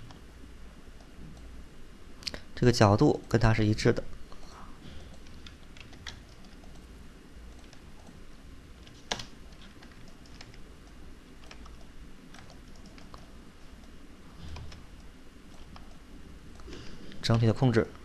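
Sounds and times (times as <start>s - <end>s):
keyboard and mouse clicks: 0.0s - 0.2s, 5.0s - 6.9s, 7.5s - 8.2s, 8.8s - 17.3s
faint low hum: 0.0s - 18.0s.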